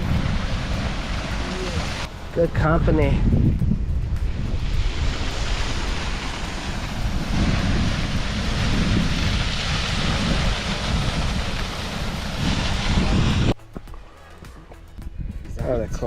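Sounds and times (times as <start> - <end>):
waterfall roaring: 0.0 - 2.3, 4.8 - 13.5
wind buffeting microphone: 0.0 - 13.9, 15.0 - 16.0.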